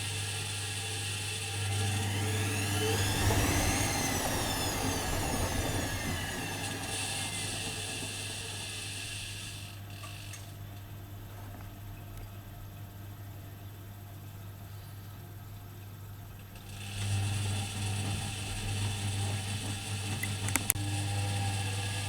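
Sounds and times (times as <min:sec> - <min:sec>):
washing machine drum motor whining: 0:00.0 - 0:10.4, 0:16.6 - 0:22.0
steady hum: 0:01.6 - 0:09.4.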